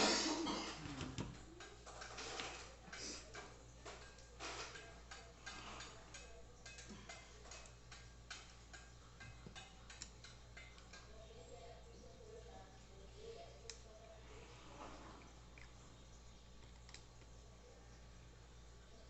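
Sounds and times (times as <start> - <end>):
utensils clicking against a dish: 1.2 - 11.3.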